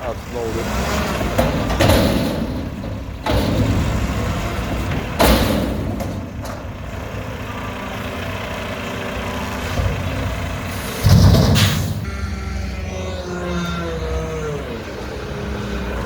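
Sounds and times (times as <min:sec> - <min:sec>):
diesel truck engine running: 0:00.0 - 0:16.0
loud thump: 0:11.0 - 0:12.1.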